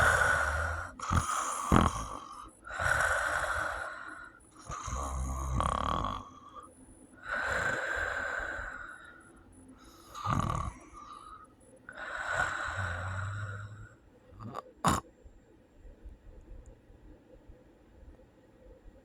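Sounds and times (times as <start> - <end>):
person snoring: 0.0 - 9.1, 9.8 - 15.0.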